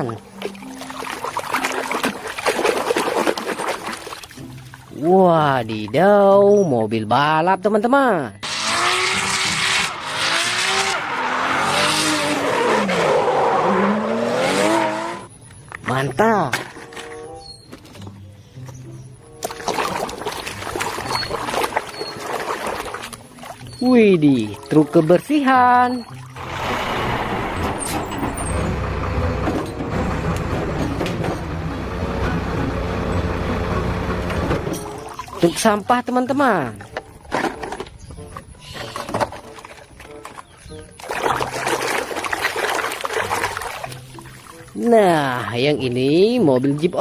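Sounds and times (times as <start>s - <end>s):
race car engine revving: 8.4s - 15.3s, 26.4s - 34.8s
tyres skidding: 8.4s - 15.6s, 25.9s - 35.1s.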